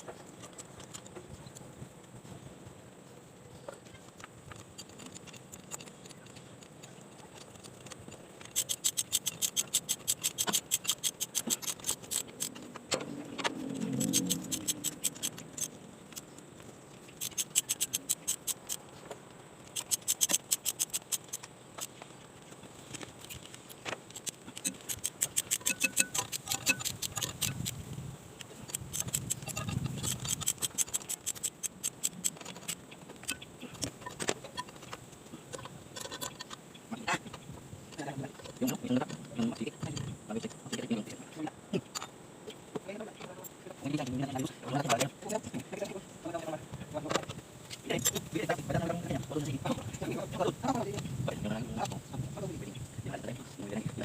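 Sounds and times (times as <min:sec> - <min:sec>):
ratchet wrench clicking: 0:07.4 - 0:12.6, 0:13.7 - 0:16.3, 0:17.2 - 0:18.8, 0:19.6 - 0:21.9, 0:23.2 - 0:27.8, 0:28.5 - 0:34.0.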